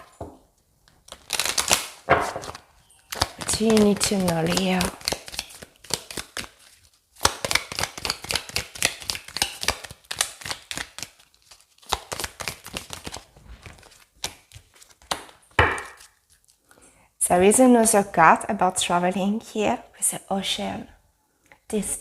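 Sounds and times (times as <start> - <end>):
cards being shuffled: 0.8 - 16.6.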